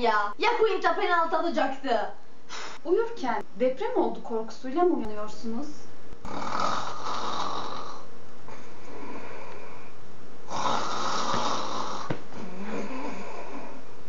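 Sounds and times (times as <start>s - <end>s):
person snoring: 6.2s - 14.0s.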